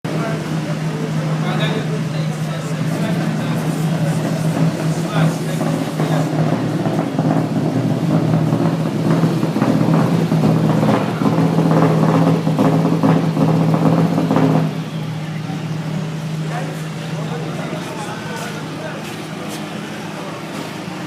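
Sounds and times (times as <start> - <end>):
rally car engine revving high: 0.1 - 18.8.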